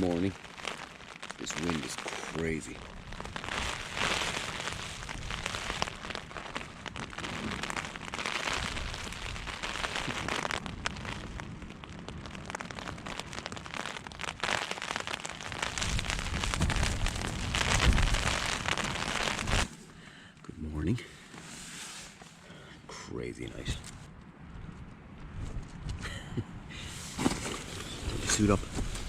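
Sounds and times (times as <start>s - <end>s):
tent fabric crackling: 0.0s - 20.0s, 21.2s - 22.5s, 26.8s - 29.0s
rain pattering on tent: 0.0s - 20.2s, 26.8s - 29.0s
wind gusts buffeting microphone: 2.5s - 13.2s, 15.6s - 19.7s, 23.4s - 26.8s.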